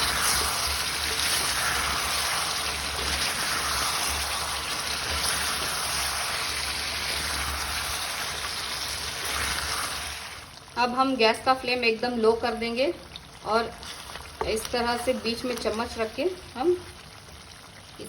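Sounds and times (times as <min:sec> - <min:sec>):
food sizzling in a pan: 0:00.0 - 0:11.1.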